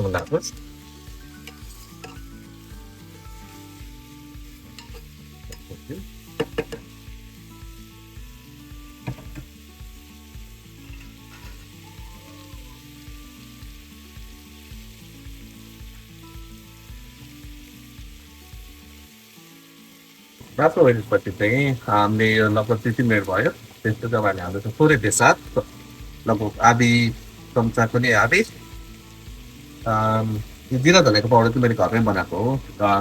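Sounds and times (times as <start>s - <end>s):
chicken sizzling in hot oil: 0.0s - 33.0s
spoon knocking against pot: 6.4s - 6.9s.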